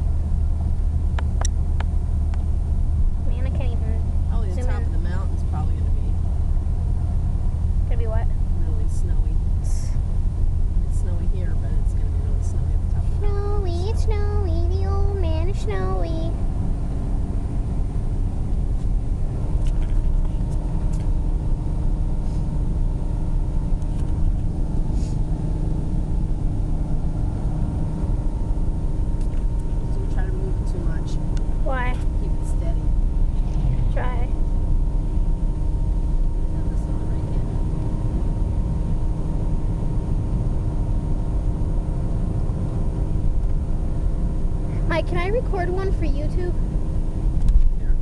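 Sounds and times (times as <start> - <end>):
car engine and road rumble: 0.0 - 48.0
faint steady hum: 0.0 - 48.0.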